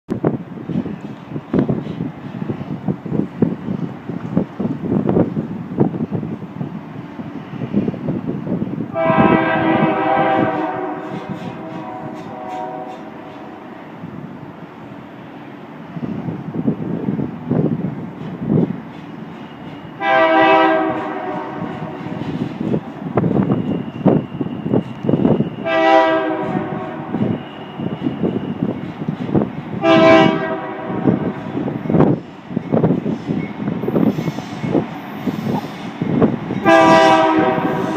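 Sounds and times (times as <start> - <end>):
train rumble: 0.1 - 37.9
locomotive air horn: 8.9 - 13.7, 20.0 - 22.2, 25.6 - 27.9, 29.8 - 31.5, 36.6 - 37.9.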